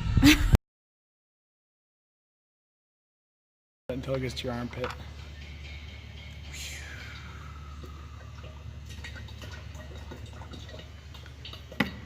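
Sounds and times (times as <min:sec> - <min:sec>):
oil gurgling into engine: 0:06.9 - 0:12.0.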